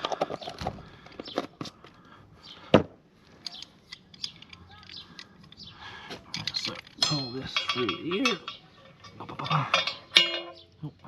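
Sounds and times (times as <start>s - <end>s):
clicks and knocks of tools: 3.4s - 10.6s.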